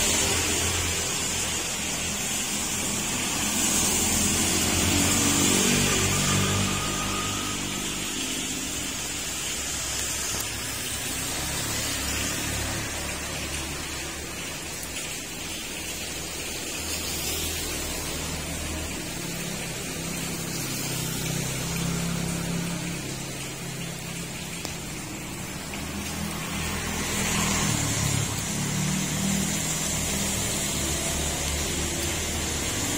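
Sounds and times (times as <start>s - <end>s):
heavy rain hissing: 0.0s - 32.9s.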